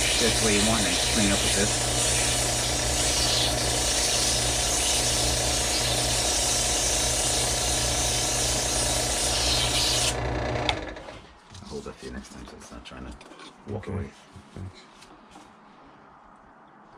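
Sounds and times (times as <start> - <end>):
coarse sanding hiss: 0.0 - 10.2
small power tool motor: 0.0 - 11.0.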